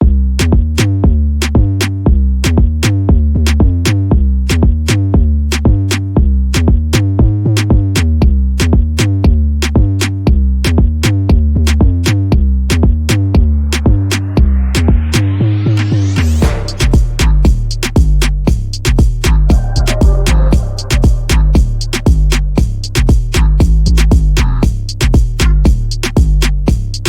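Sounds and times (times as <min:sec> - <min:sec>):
electronic music with drum machine: 0:11.9 - 0:27.0.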